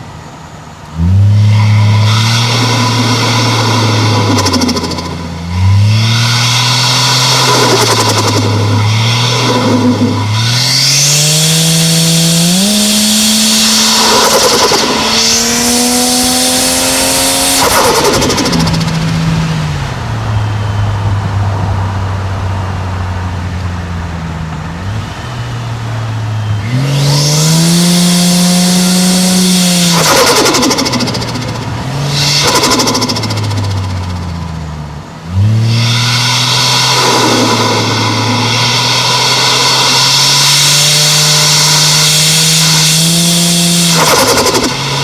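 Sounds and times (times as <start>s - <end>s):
car engine revving: 0.0s - 45.0s
turbo flutter hiss: 0.9s - 19.9s, 35.6s - 45.0s.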